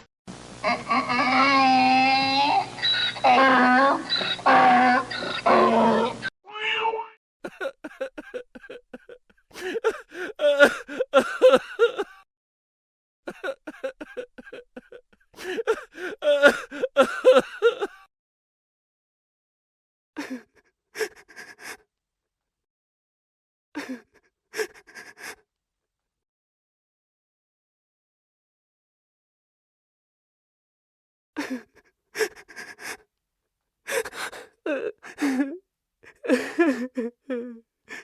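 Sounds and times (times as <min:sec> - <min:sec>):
person wailing cry: 0:00.7 - 0:02.5, 0:09.6 - 0:12.2, 0:15.4 - 0:18.0, 0:33.9 - 0:38.0
person sobbing: 0:07.4 - 0:12.2, 0:13.3 - 0:18.1, 0:20.2 - 0:21.8, 0:23.8 - 0:25.4, 0:31.4 - 0:33.0, 0:33.9 - 0:38.0.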